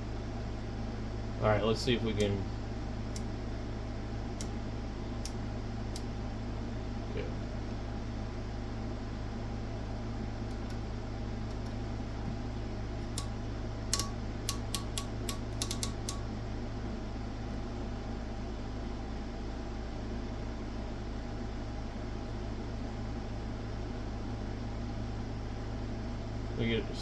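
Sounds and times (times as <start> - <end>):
fan and transformer hum: 0.0 - 27.0
switch knobs clicking: 2.1 - 2.4, 3.1 - 3.3, 4.4 - 4.6, 5.2 - 6.1, 11.4 - 12.4, 13.0 - 16.3.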